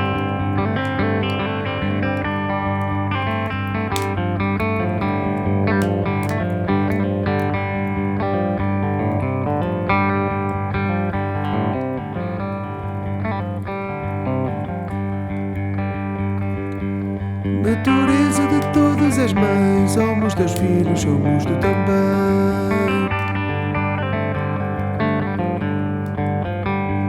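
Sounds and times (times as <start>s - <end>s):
plucked guitar instrumental: 0.0s - 27.0s.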